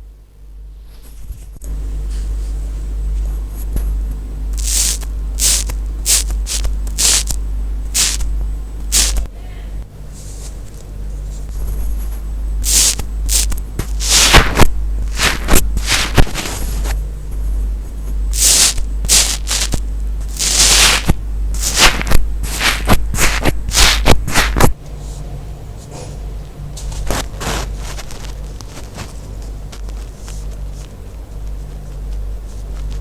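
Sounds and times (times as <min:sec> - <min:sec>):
slime crunching bursts: 0:04.6 - 0:07.4, 0:08.0 - 0:08.2, 0:08.9 - 0:09.3, 0:12.6 - 0:16.6, 0:18.3 - 0:24.7
slime crust crackling: 0:12.6 - 0:16.8, 0:18.4 - 0:24.7.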